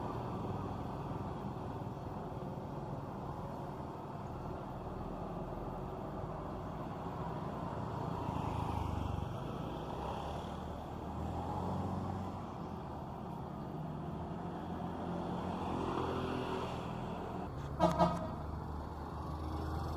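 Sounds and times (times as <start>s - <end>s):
bus engine rumbling: 17.0s - 19.9s.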